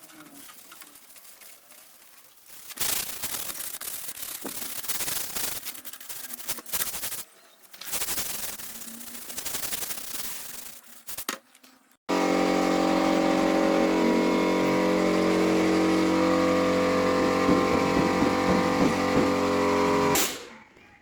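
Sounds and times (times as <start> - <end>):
wood being sanded by hand: 12.1 - 20.2.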